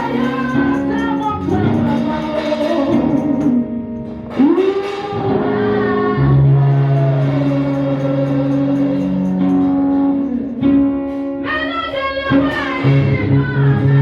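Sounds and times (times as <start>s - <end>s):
gospel voices singing: 0.0s - 3.7s, 4.3s - 10.6s
instrumental backing: 0.0s - 14.0s.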